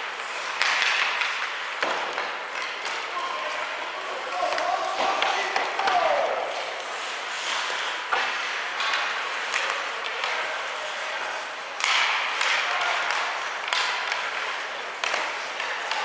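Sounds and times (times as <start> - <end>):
skates hissing on ice: 0.0 - 2.5, 5.0 - 16.0
hockey stick and puck knocks: 0.4 - 3.1, 11.8 - 16.0.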